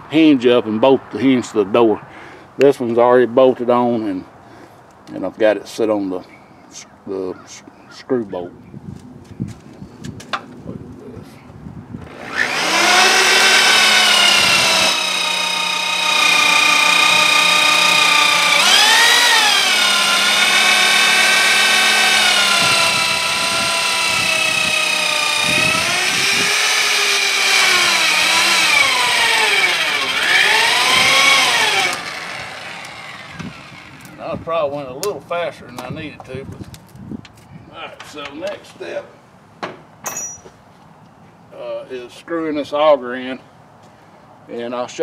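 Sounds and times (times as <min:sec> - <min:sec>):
electric drill motor whine: 0:12.0 - 0:34.2.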